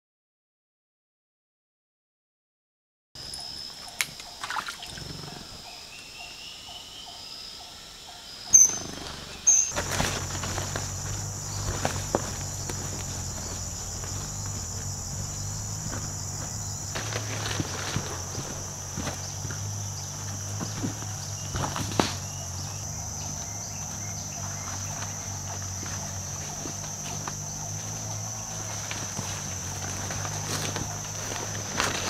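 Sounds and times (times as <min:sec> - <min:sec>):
insects droning: 0:03.2 - 0:32.0
low steady hum: 0:09.7 - 0:32.0.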